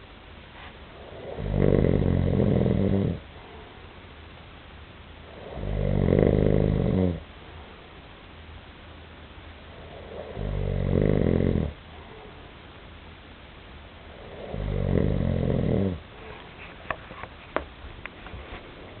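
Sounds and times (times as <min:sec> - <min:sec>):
dog snoring: 0:00.9 - 0:03.3, 0:05.2 - 0:07.2, 0:09.7 - 0:11.8, 0:14.1 - 0:16.3.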